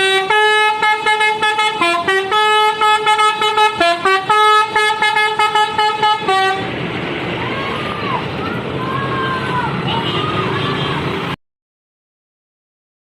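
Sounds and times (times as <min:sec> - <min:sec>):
multi-tone bus horn tune: 0:00.0 - 0:06.8.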